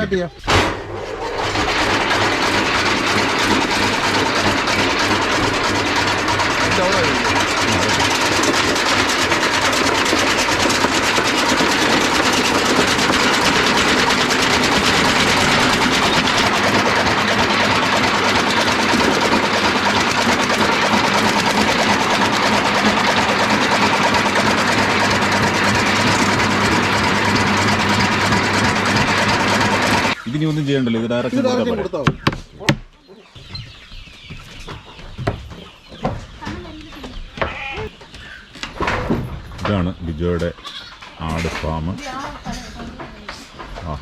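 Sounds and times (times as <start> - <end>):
chaff cutter chopping grass: 1.4 - 30.2.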